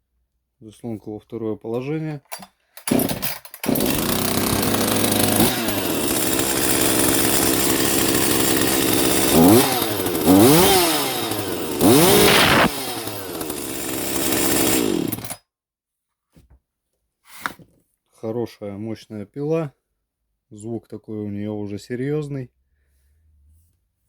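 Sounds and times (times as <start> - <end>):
chainsaw engine revving: 2.8 - 15.4.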